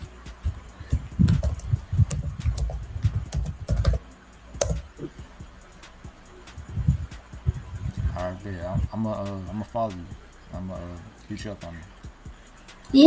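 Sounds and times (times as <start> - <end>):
keyboard typing: 0.0 - 5.1, 6.5 - 8.9.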